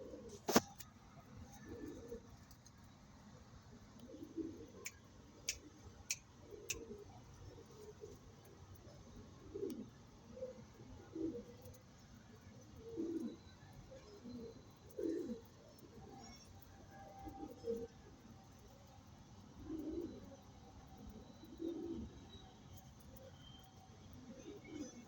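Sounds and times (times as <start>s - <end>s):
pigeons cooing: 0.0s - 0.8s, 1.5s - 2.3s, 3.8s - 16.5s, 17.1s - 18.1s, 19.4s - 22.2s, 24.2s - 25.0s.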